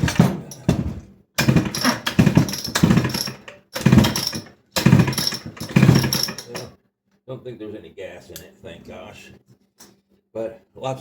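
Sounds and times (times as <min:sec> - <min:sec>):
chainsaw recoil starter pulled: 0:00.0 - 0:00.6, 0:01.4 - 0:06.7
engine turning over not firing: 0:01.4 - 0:06.6.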